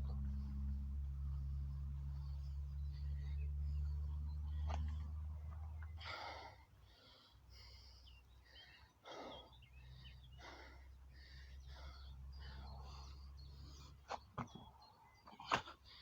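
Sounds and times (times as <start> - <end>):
low hum: 0.0 - 14.8
small birds chirping: 0.0 - 16.0
man breathing hard: 5.7 - 14.1.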